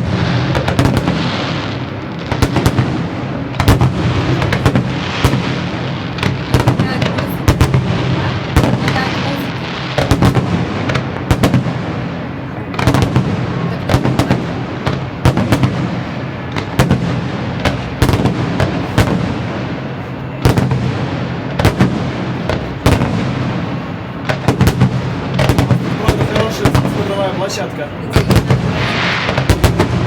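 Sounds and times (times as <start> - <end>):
firework shells bursting: 0.0 - 30.0
fireworks crackling: 0.0 - 30.0.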